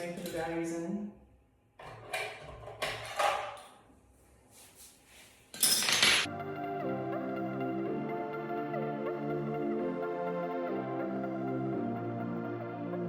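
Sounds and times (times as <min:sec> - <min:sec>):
soft synth background music: 0:06.3 - 0:13.0.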